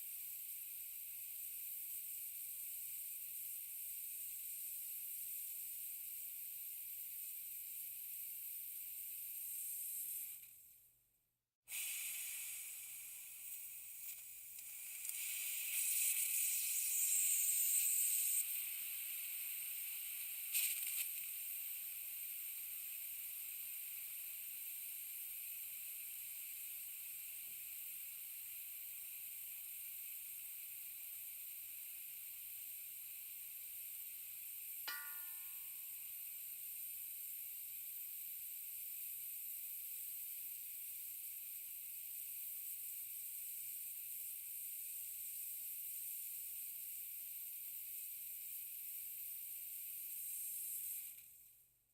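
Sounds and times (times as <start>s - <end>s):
compressed air hissing: 0.0s - 10.6s, 11.7s - 28.2s
sharp air puff: 11.7s - 19.3s
short ringing ping: 34.9s - 35.7s.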